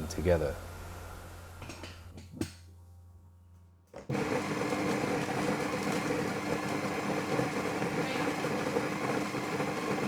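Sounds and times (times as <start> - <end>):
coffee grinder grinding beans: 4.1 - 10.0.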